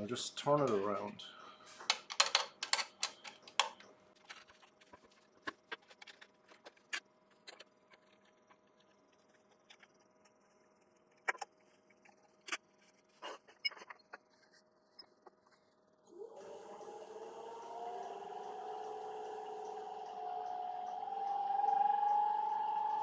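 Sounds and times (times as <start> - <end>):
faint steady hum: 0.0 - 23.0
metallic clicks and knocks: 1.9 - 4.4.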